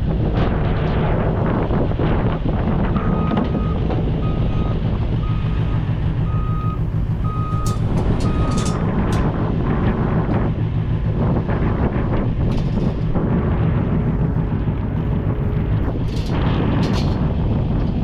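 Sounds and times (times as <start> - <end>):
wind rumble on microphone: 0.0 - 18.0
reversing alarm beeping: 3.0 - 8.8.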